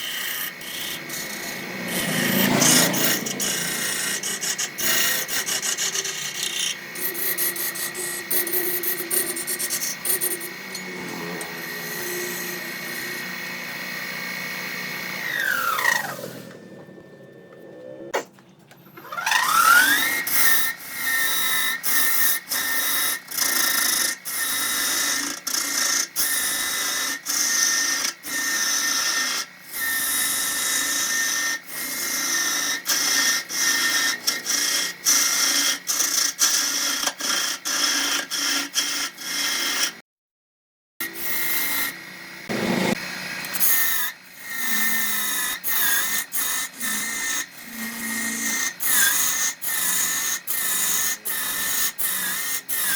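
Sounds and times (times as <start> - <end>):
turning tool cutting wood: 0.0 - 18.2, 19.0 - 40.0, 41.0 - 52.9
wood lathe whining: 0.0 - 18.2, 18.9 - 40.0, 41.1 - 52.9.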